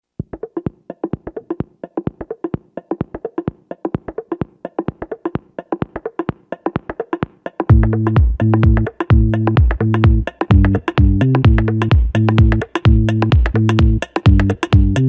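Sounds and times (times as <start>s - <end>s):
fast percussion music: 0.2s - 15.0s.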